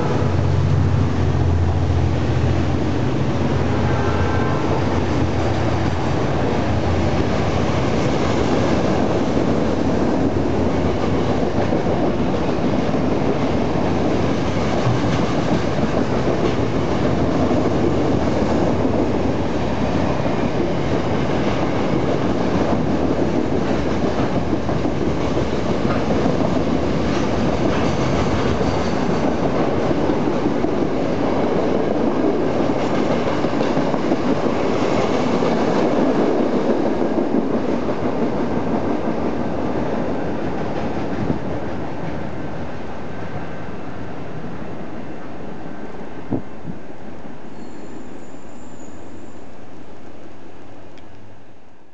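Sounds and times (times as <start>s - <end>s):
freight train wagons rolling: 20.2s - 31.2s.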